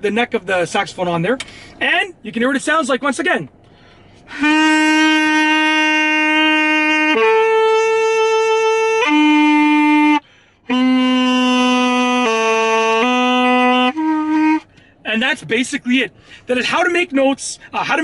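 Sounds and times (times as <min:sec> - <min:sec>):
alto saxophone long notes: 0:04.3 - 0:14.8.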